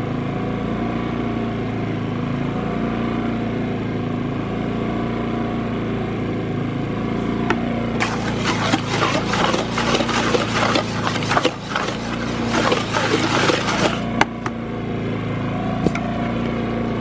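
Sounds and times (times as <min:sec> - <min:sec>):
engine running: 0:00.0 - 0:17.0
shovel scraping concrete mix: 0:08.0 - 0:14.4.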